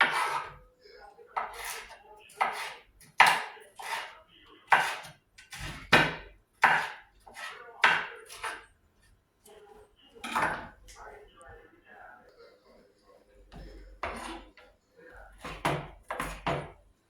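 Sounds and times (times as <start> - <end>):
knife chopping on cutting board: 0.0 - 0.6, 1.4 - 8.6, 13.5 - 14.5, 15.4 - 16.8.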